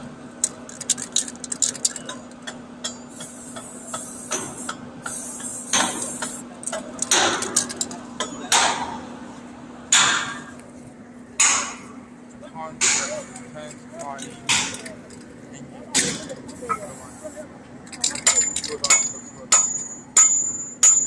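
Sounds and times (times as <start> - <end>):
spray can rattling: 0.7 - 2.0
spray can hissing: 3.2 - 6.4.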